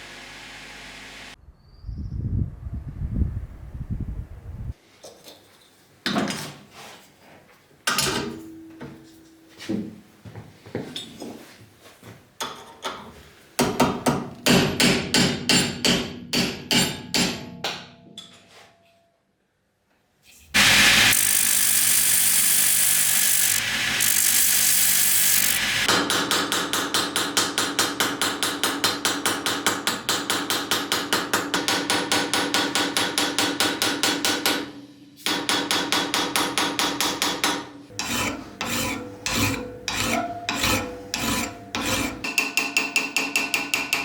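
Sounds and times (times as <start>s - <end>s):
power tool running: 0.0s - 1.4s, 20.6s - 25.9s.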